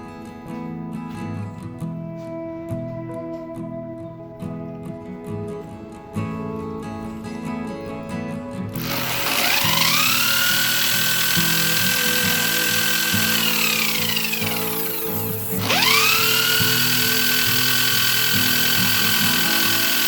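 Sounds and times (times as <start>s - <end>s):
acoustic guitar music: 0.0s - 20.0s
small electric motor whining: 8.8s - 20.0s.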